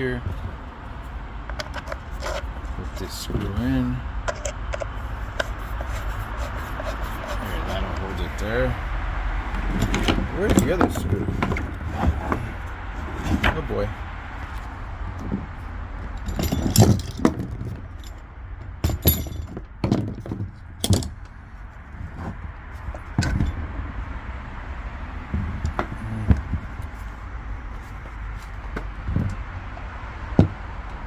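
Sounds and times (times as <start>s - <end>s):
small parts clicking and clinking: 4.2s - 6.0s, 16.1s - 18.2s, 18.8s - 21.4s.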